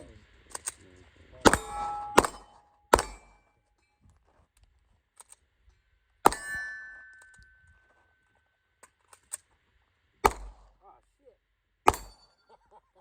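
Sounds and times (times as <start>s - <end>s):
pistol shots: 1.4s - 3.4s, 6.3s - 6.7s, 10.2s - 10.7s, 11.9s - 12.3s
metallic ringing: 1.5s - 4.0s, 6.3s - 8.0s, 11.9s - 12.5s.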